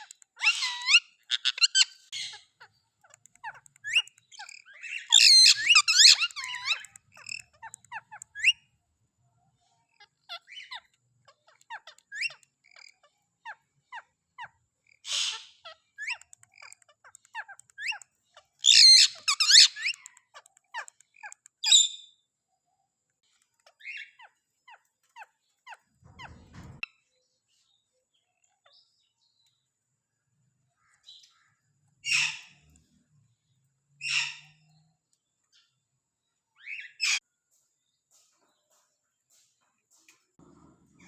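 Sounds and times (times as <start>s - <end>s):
parakeet calling: 0.0s - 8.7s, 10.2s - 22.0s, 30.9s - 32.6s
soft chirps and clicks: 0.0s - 22.2s, 22.9s - 27.0s, 30.7s - 33.8s.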